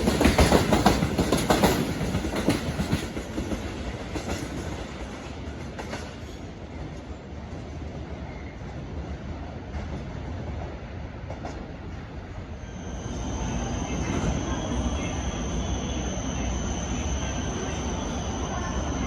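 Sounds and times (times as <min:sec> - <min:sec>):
freight train rumbling: 0:00.0 - 0:19.0
high wheel squeal: 0:12.6 - 0:19.0.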